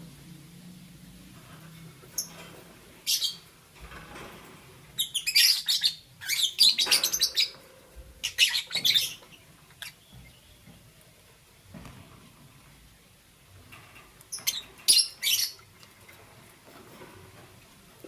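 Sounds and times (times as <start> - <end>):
lovebirds chirping: 2.0 - 3.8, 4.8 - 11.9, 14.2 - 16.0
soft knocks and shuffling: 7.8 - 12.9.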